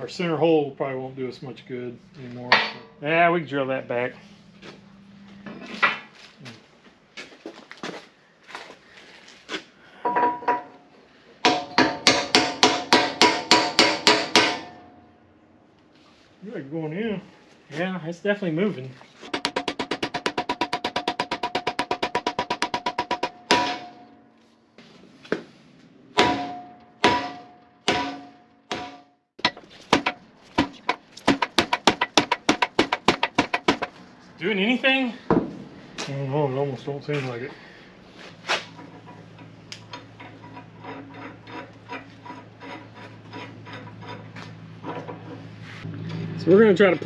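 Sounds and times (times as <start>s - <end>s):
hammer striking steel: 2.5s - 3.1s, 11.4s - 15.1s, 19.3s - 24.3s, 26.2s - 33.9s.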